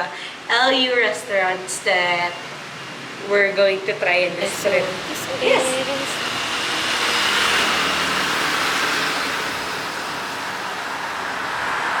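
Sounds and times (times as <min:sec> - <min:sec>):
road vehicle running: 0:04.0 - 0:12.0.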